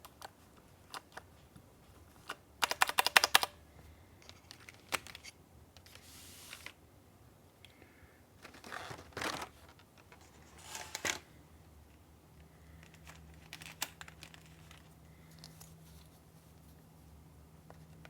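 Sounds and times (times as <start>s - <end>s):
rustling crinkling handling: 8.4s - 11.3s, 12.7s - 17.2s.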